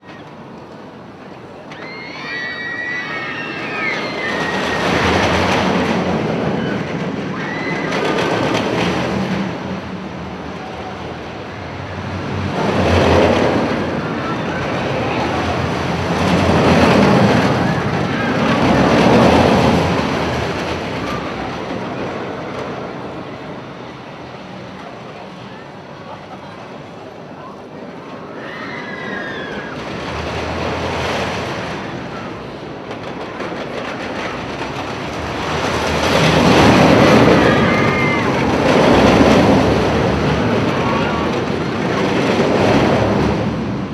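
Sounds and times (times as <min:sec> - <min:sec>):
roller coaster rumbling on track: 0:00.0 - 0:43.9
riders screaming: 0:01.7 - 0:08.8, 0:28.2 - 0:30.3, 0:35.3 - 0:42.8.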